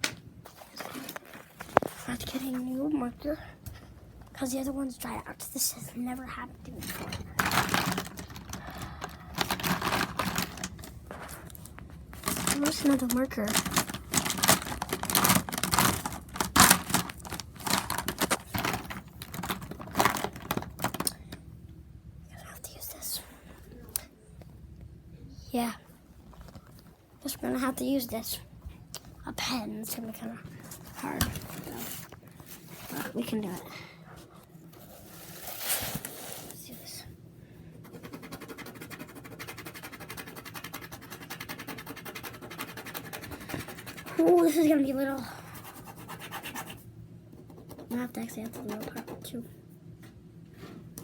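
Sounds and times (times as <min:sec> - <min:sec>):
plastic markers clattering: 0:06.8 - 0:21.2
pen scribbling on paper: 0:37.8 - 0:44.2, 0:45.6 - 0:46.8, 0:47.4 - 0:49.2.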